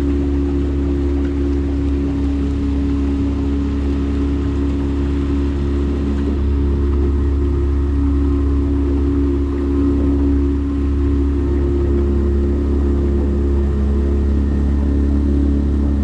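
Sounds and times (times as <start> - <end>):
outboard motor droning: 0.0 - 16.0.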